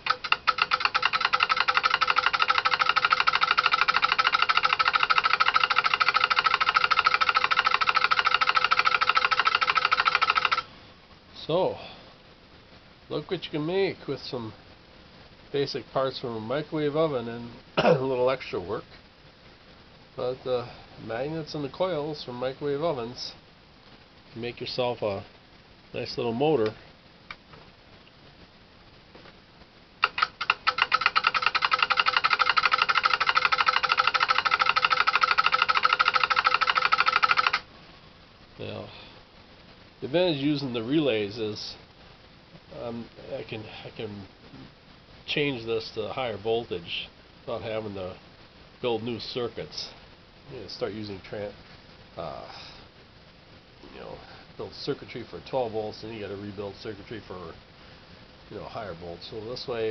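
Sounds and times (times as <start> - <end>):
relays clicking: 0.0 - 10.6, 30.0 - 37.6.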